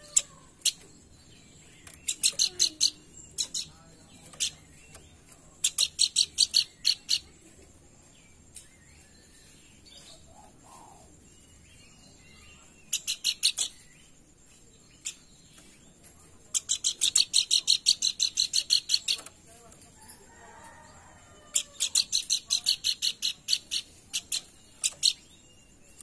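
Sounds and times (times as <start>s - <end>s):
babbler calling: 2.0s - 3.8s.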